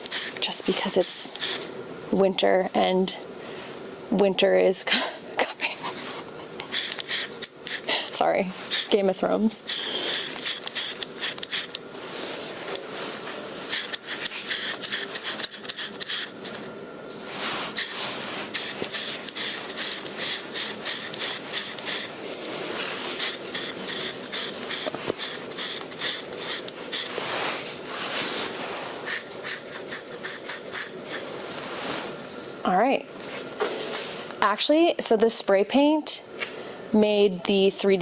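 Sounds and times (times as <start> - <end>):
aerosol spray can hissing: 0.0 - 1.7, 6.7 - 7.9, 8.7 - 9.0, 9.6 - 11.8, 13.7 - 16.4, 17.7 - 22.1, 23.1 - 27.2, 29.0 - 31.2.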